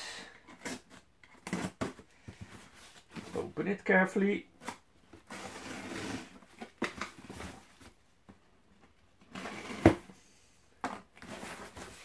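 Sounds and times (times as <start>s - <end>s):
cardboard rustling and scraping: 0.5s - 3.6s, 4.6s - 8.0s, 8.8s - 10.2s, 10.9s - 12.0s.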